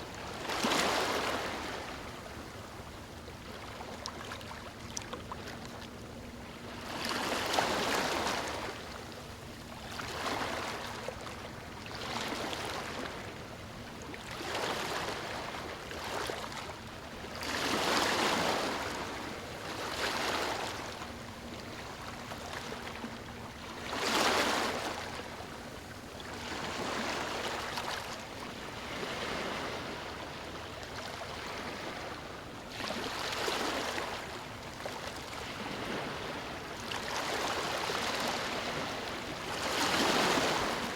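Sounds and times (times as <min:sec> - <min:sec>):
small waves breaking on beach: 0:00.0 - 0:02.5, 0:06.6 - 0:08.9, 0:09.8 - 0:11.2, 0:14.2 - 0:23.0, 0:23.6 - 0:40.9.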